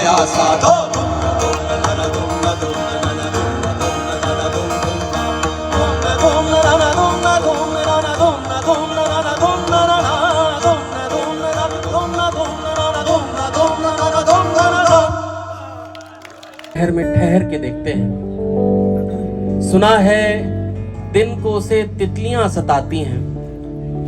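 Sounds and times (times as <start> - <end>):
wavering folk melody: 0.0 - 15.5.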